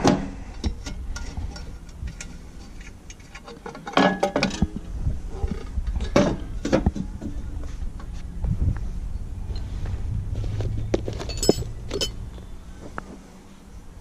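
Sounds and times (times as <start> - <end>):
metal tools clinking on fittings: 11.1 - 12.2.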